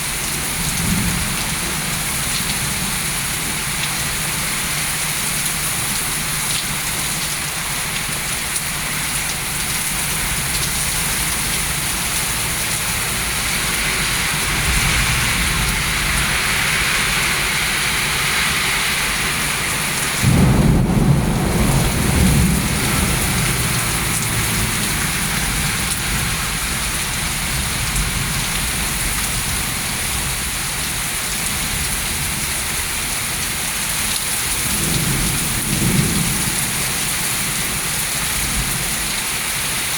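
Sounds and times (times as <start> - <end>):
heavy rain falling: 0.0 - 39.9
thunderclap rumbling: 20.2 - 28.4.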